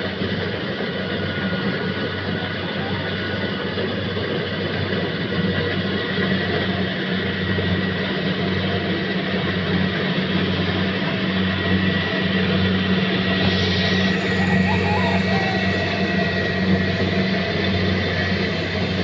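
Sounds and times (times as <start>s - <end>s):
combine harvester engine hum: 0.0s - 19.0s
thin high whine: 10.3s - 19.0s.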